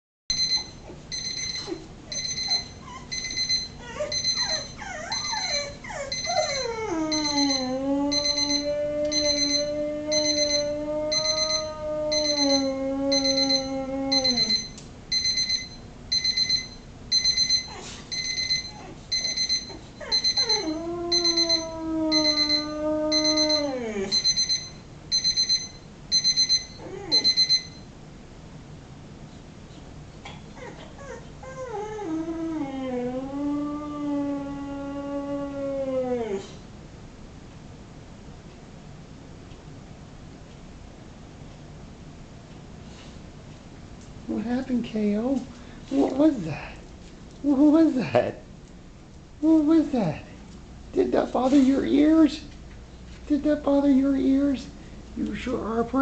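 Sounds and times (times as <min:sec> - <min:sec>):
kitchen timer beeping: 0:00.3 - 0:05.3, 0:07.1 - 0:21.6, 0:22.2 - 0:27.8
dog yelping: 0:00.4 - 0:14.7, 0:17.5 - 0:24.2, 0:26.8 - 0:27.5, 0:30.6 - 0:32.2
dog howling: 0:03.8 - 0:14.6, 0:19.7 - 0:24.1, 0:26.8 - 0:27.3, 0:30.6 - 0:36.6.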